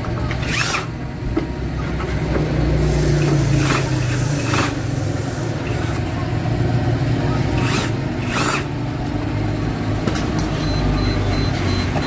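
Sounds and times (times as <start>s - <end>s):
engine running: 0.0s - 12.0s.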